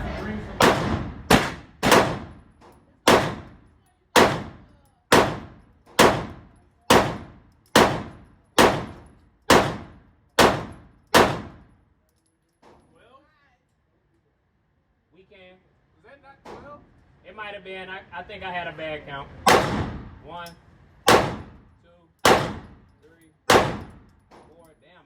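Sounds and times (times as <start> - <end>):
airsoft pistol shots: 0.6 - 2.4, 3.1 - 3.6, 4.2 - 11.6, 19.5 - 20.0, 21.1 - 21.6, 22.3 - 22.8, 23.5 - 24.0.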